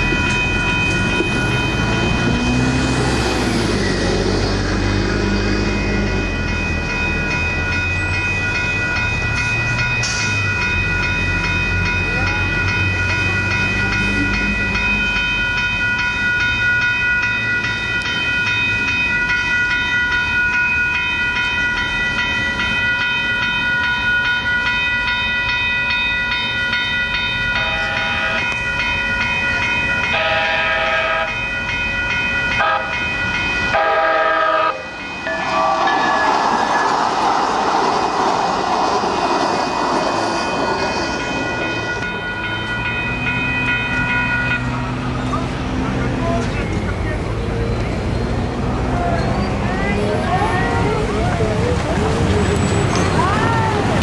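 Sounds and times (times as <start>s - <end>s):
crossing warning bells ringing: 0.0s - 54.0s
train rumbling past: 0.0s - 54.0s
train horn blasts: 30.1s - 31.4s, 32.6s - 33.0s, 33.7s - 36.2s.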